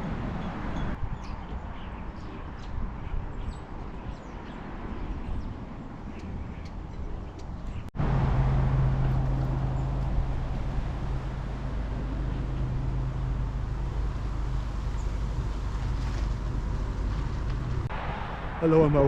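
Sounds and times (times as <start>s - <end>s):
vehicle engine running: 8.0s - 18.0s
even rushing noise: 8.0s - 19.0s.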